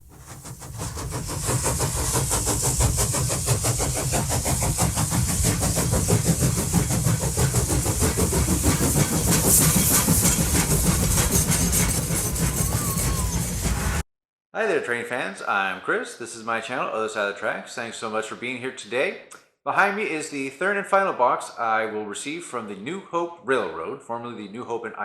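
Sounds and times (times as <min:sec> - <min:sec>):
train running: 0:00.0 - 0:14.0.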